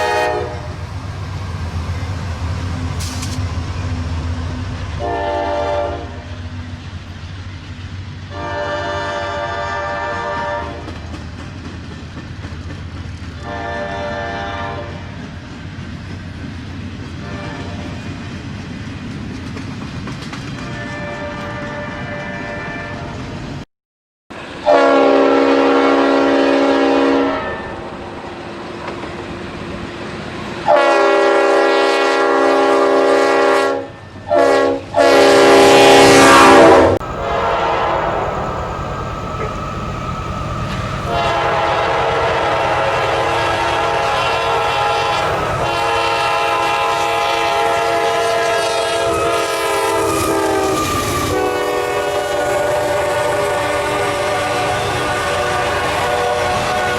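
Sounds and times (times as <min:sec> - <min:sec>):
locomotive air horn: 0:00.0 - 0:00.8, 0:05.0 - 0:06.5, 0:08.3 - 0:11.0, 0:13.4 - 0:15.1, 0:17.2 - 0:18.0, 0:20.6 - 0:23.2, 0:24.6 - 0:27.9, 0:30.6 - 0:39.5, 0:41.0 - 0:56.9.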